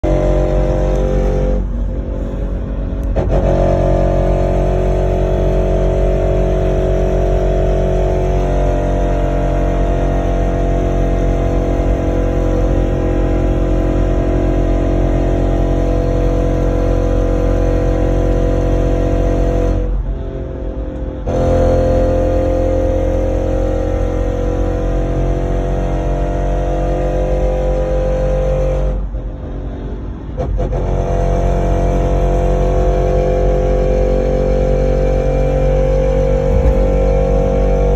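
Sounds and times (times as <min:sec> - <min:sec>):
steady whining tone: 0:00.0 - 0:08.8, 0:31.8 - 0:37.9
engine and road noise: 0:00.0 - 0:37.9.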